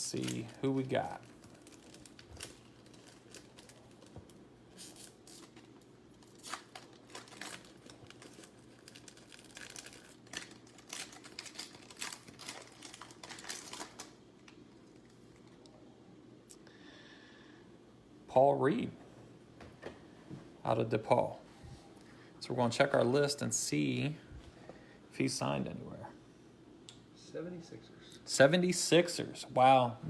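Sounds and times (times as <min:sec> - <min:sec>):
wrapper tearing and crinkling: 0:00.1 - 0:15.0.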